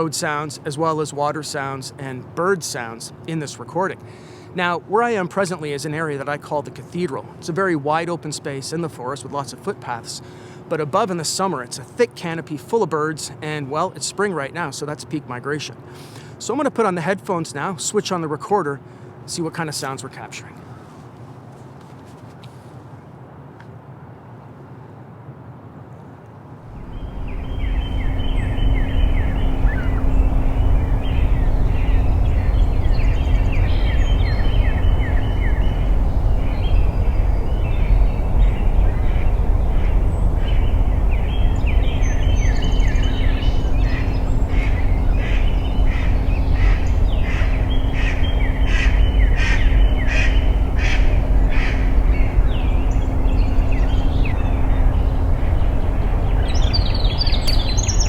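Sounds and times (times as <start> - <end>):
faint steady hum: 0.0 - 58.0
road traffic rumble: 26.6 - 58.0
birdsong: 26.7 - 58.0.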